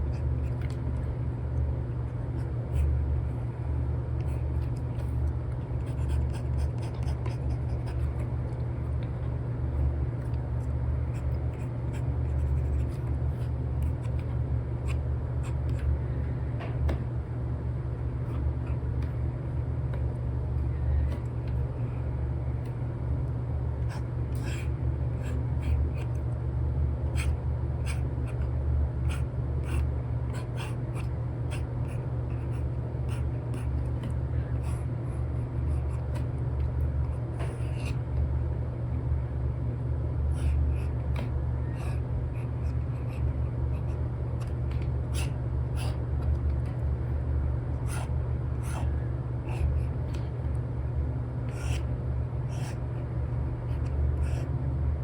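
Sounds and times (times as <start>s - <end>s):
low background rumble: 0.0s - 55.0s
stylus scratching on screen: 4.2s - 8.3s, 11.0s - 15.9s, 23.8s - 26.2s, 27.2s - 36.3s, 37.2s - 38.0s, 40.4s - 46.1s, 47.8s - 50.2s, 51.5s - 51.9s, 52.5s - 52.9s, 53.7s - 54.5s.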